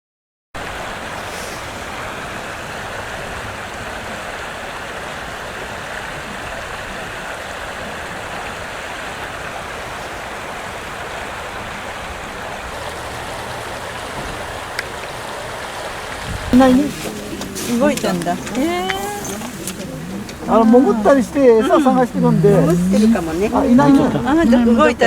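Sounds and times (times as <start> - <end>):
river water rushing: 0.6 - 25.0.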